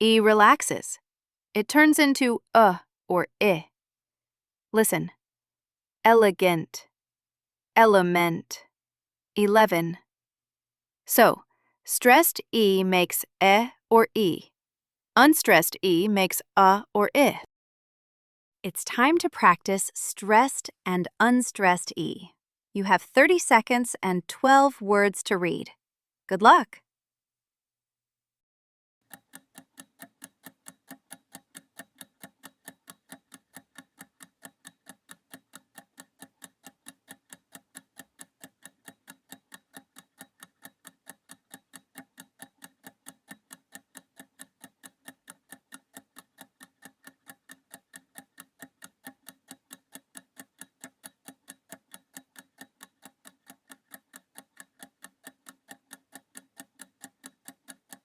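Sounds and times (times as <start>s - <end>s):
clock ticking: 18.8s - 25.7s, 29.0s - 58.0s.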